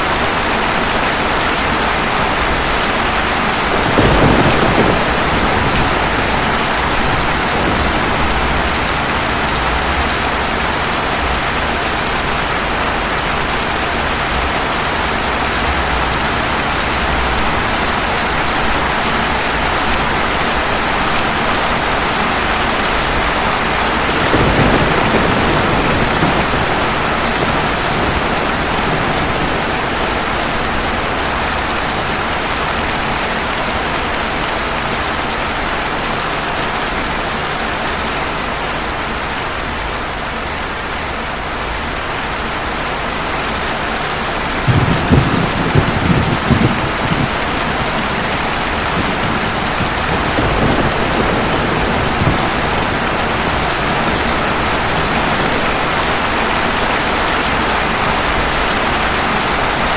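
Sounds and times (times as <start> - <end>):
steady rain: 0.0 - 59.9
low rumble of thunder: 0.6 - 19.9, 21.4 - 31.9, 44.4 - 59.6.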